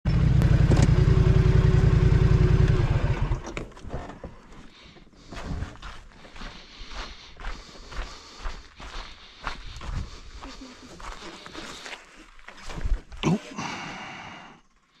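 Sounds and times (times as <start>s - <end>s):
atv engine whining and shutting off: 0.1s - 4.6s.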